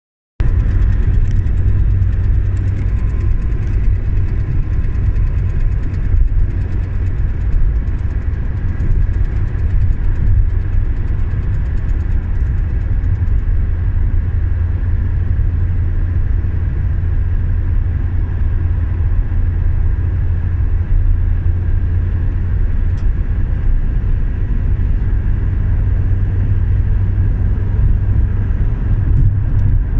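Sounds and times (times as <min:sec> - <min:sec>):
faint fast ticking: 0:00.4 - 0:13.6
diesel car engine running: 0:00.4 - 0:29.9.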